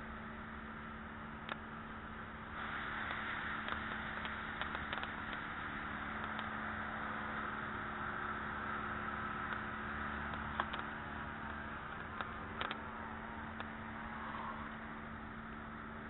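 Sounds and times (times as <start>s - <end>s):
faint steady hum: 0.0s - 16.0s
hiss-like rush: 2.4s - 16.0s
faint clicks: 3.0s - 6.6s, 9.4s - 12.9s, 13.5s - 14.8s.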